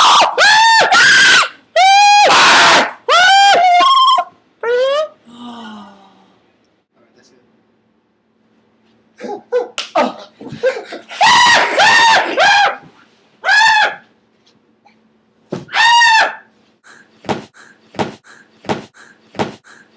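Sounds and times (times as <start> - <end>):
high-pitched vocal shrieks: 0.0 - 5.2.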